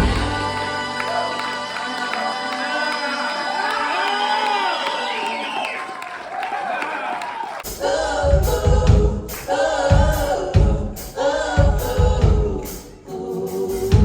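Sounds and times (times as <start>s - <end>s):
voices singing together: 0.0s - 5.6s, 7.6s - 14.0s
drum and bass beat: 7.7s - 14.0s.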